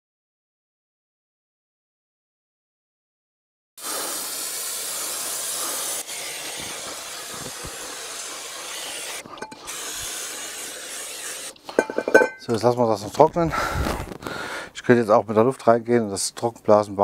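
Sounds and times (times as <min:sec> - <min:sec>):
aerosol spray hissing: 0:03.8 - 0:11.7.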